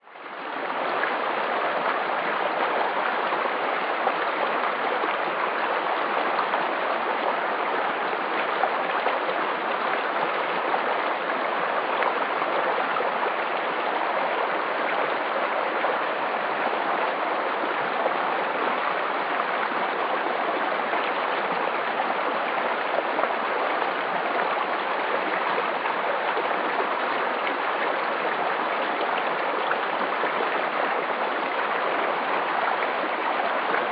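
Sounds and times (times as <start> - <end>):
water rushing: 0.0 - 33.9.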